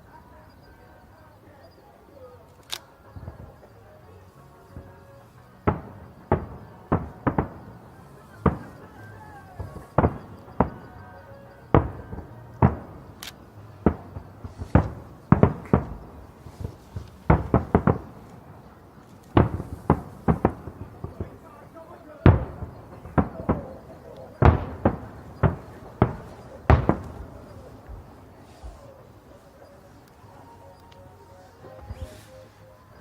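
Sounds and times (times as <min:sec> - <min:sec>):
fireworks bursting: 0:00.0 - 0:33.0.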